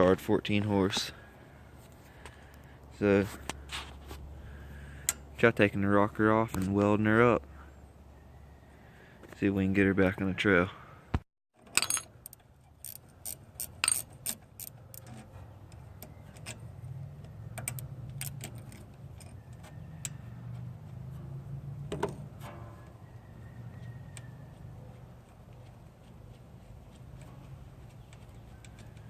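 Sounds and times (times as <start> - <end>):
metal tools clinking: 11.6 - 16.7.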